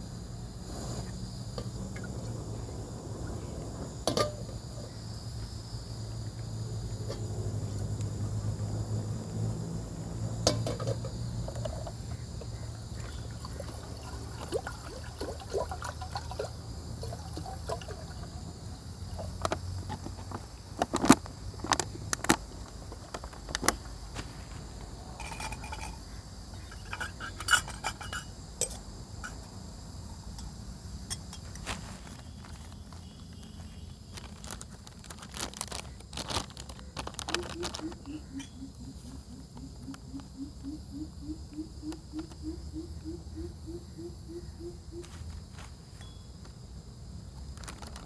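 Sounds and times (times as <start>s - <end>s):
water being poured: 13.0s - 18.2s.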